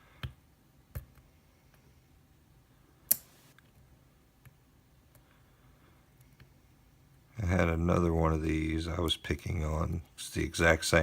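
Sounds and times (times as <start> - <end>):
lock pick metallic clicks: 3.1 - 3.4.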